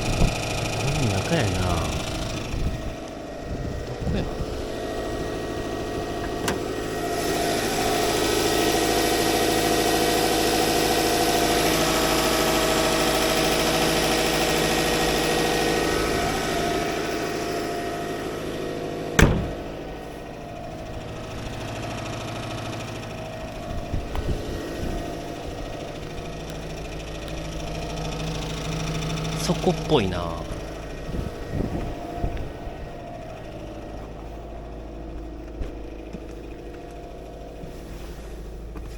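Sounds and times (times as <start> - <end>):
whirring rattle: 0.0 - 18.0
car engine idling: 0.0 - 38.9
sharp engine knock: 19.2 - 19.7.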